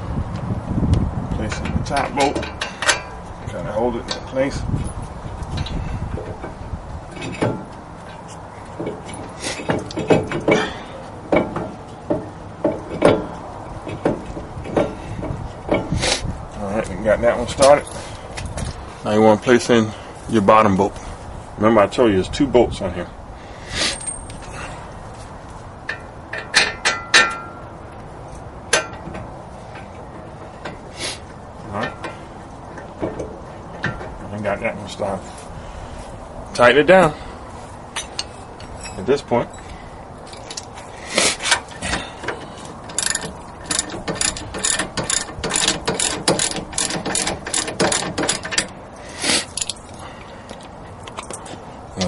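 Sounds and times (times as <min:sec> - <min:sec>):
metal bolt clinking on metal: 0:01.5 - 0:03.2, 0:25.9 - 0:27.7, 0:41.5 - 0:48.8
ratchet wrench clicking: 0:42.9 - 0:48.7.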